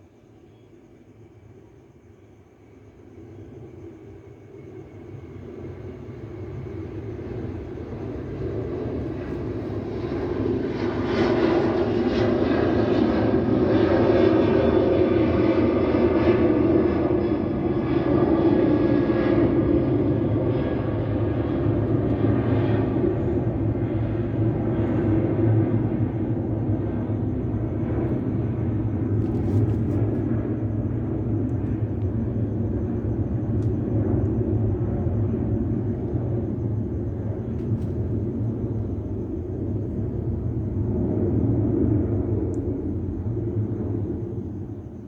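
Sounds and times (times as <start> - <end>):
jet engines at takeoff power: 0.0 - 45.0.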